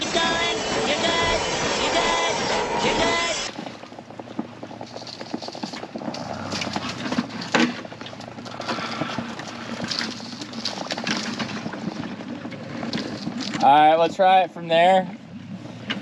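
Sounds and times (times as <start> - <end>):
ice crunching and cracking: 3.4 - 13.7.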